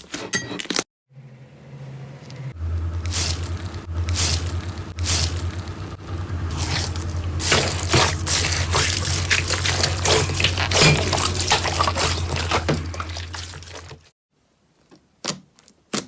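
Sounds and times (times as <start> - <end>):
low steady hum: 1.2 - 14.0
slime squishing and crackling: 6.5 - 14.1.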